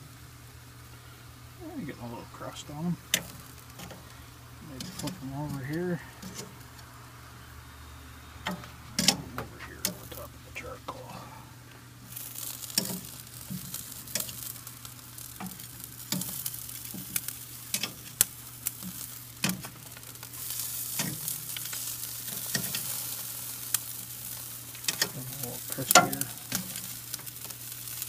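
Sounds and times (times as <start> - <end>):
chicken wings sizzling on grill: 0.0 - 28.0
tongs clicking against grate: 12.6 - 14.5, 15.2 - 20.2, 20.9 - 23.1, 24.8 - 25.2, 25.9 - 27.6.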